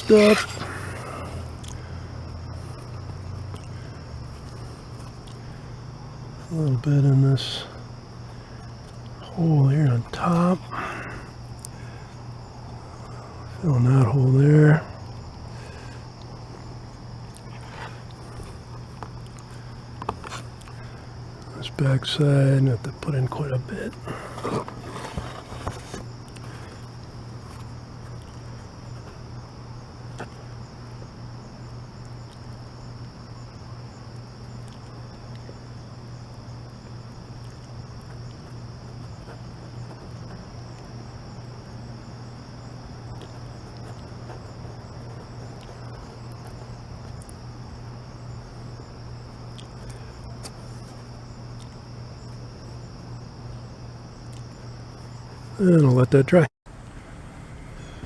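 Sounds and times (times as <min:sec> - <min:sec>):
insect chorus: 0:00.0 - 0:58.0
low hum: 0:56.7 - 0:58.0.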